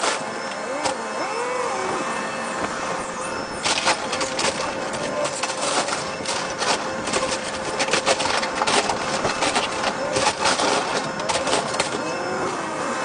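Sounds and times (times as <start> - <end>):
excavator whining: 0.0 - 13.0
wood and debris cracking: 3.6 - 12.1.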